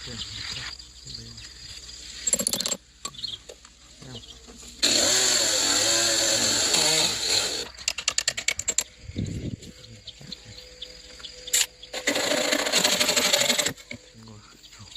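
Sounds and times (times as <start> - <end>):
small engine power tool running: 4.8 - 8.8, 11.6 - 14.0.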